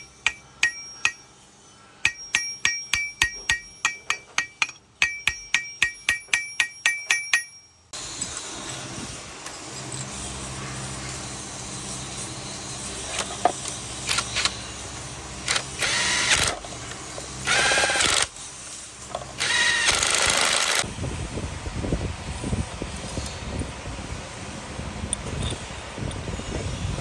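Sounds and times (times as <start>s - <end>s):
power tool running in bursts: 13.9s - 16.7s, 17.4s - 18.4s, 19.4s - 20.8s
sharp metallic clicks: 19.4s - 20.8s.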